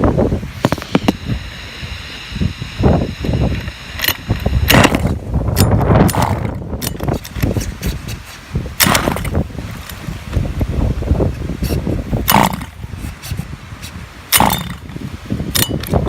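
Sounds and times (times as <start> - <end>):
pull-starter: 0.4 - 16.0
small two-stroke engine sputtering: 0.4 - 16.0.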